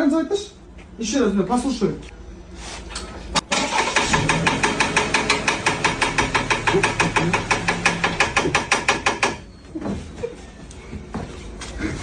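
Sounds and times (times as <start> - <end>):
car engine knocking rapidly: 4.0 - 9.4.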